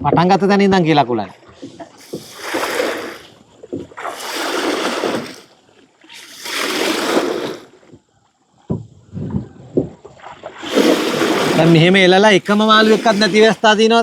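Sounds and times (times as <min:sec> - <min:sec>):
water splashing in surges: 0:01.4 - 0:08.0, 0:09.9 - 0:14.0.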